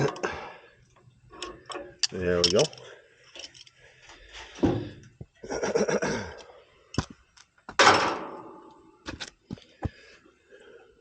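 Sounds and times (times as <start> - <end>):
parts clattering: 0.0 - 5.8, 6.9 - 10.0
tools knocking and clicking: 1.4 - 2.8.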